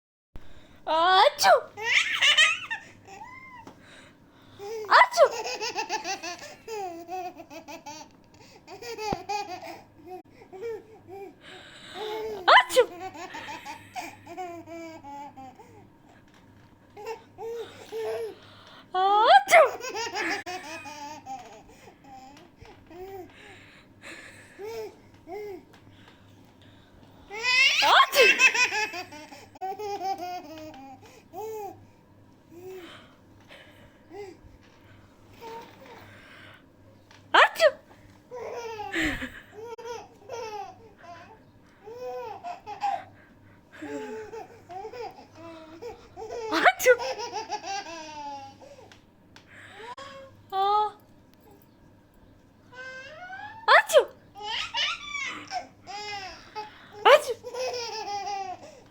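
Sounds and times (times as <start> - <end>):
woman mock sneezing: 1.3 - 1.7, 12.5 - 12.9, 19.4 - 19.8, 37.4 - 37.8, 53.7 - 54.1, 57.1 - 57.4
baby laughing: 1.8 - 3.7, 4.6 - 8.1, 8.7 - 11.2, 19.4 - 22.3, 27.3 - 31.7, 38.3 - 41.2, 41.9 - 43.1, 43.8 - 48.6, 53.1 - 58.8
baby giggling: 43.8 - 48.5, 57.1 - 58.6.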